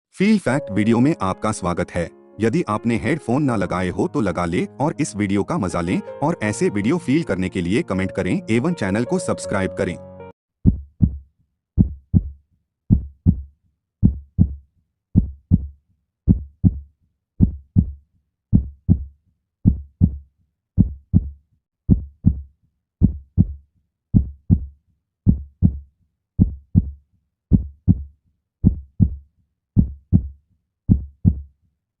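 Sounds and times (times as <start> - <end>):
heartbeat thumps: 11.8 - 14.6, 15.2 - 15.7, 16.3 - 16.8, 17.4 - 18.0, 18.6 - 19.1, 19.7 - 20.2, 20.8 - 21.3, 23.0 - 23.6, 24.2 - 24.7, 25.3 - 25.8, 26.4 - 29.2, 29.8 - 30.3, 30.9 - 31.4.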